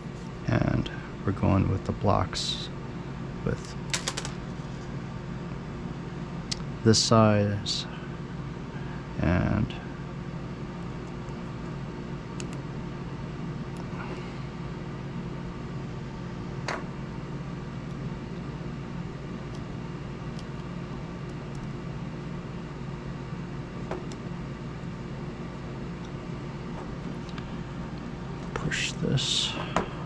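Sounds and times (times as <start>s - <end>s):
mechanical hum: 0.0s - 30.0s
plastic parts clicking: 3.9s - 4.4s.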